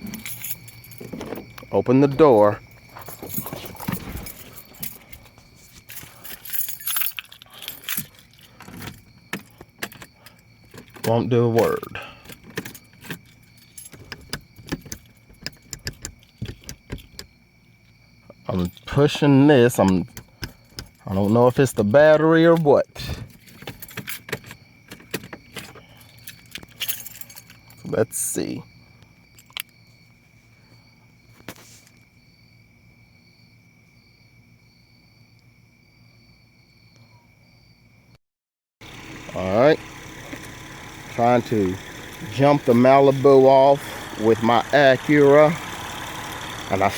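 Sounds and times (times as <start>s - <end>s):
keys jangling: 0.0s - 1.7s, 2.6s - 17.3s, 20.0s - 21.9s, 22.5s - 28.0s
pulsing insect chirp: 0.0s - 22.9s
insects trilling: 0.0s - 38.2s, 38.9s - 46.9s.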